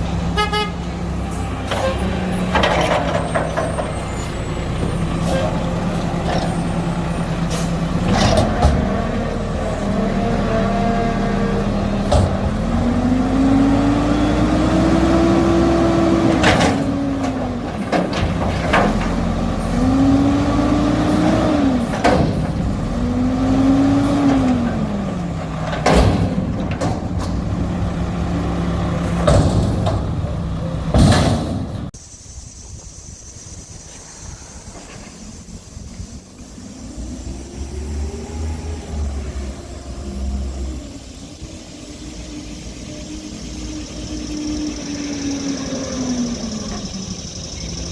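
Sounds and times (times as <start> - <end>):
garbage truck diesel engine revving: 0.0 - 32.0, 35.2 - 47.9
metal bangs and clanks: 25.6 - 28.1, 28.9 - 32.0.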